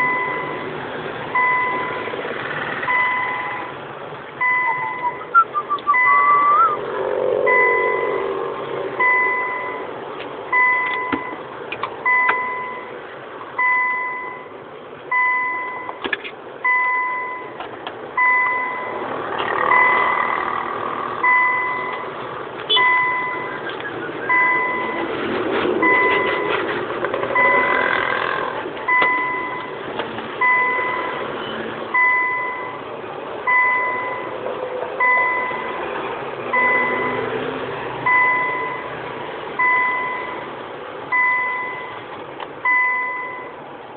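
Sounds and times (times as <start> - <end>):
electronic beeper beeping: 4.4 - 6.8, 7.4 - 8.3.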